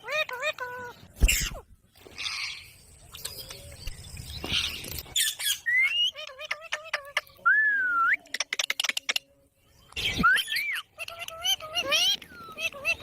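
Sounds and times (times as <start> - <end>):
parrot squawking and whistling: 5.2 - 6.6.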